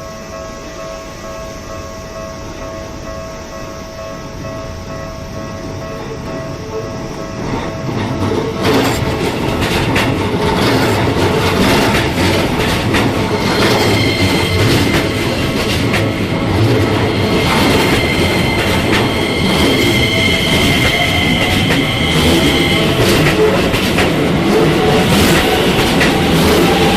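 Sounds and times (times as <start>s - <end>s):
train rumbling past: 0.0s - 26.9s
high-pitched squeal: 6.0s - 26.9s
wheels clacking over rail joints: 7.4s - 26.9s.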